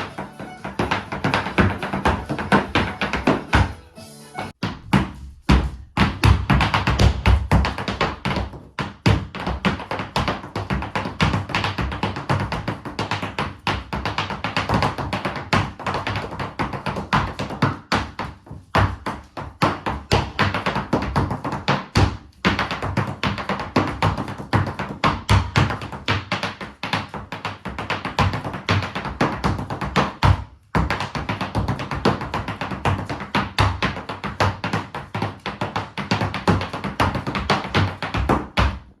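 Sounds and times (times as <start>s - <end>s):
dance shoes tapping a hard floor: 0.0s - 3.9s, 4.6s - 39.0s
music: 0.0s - 4.6s.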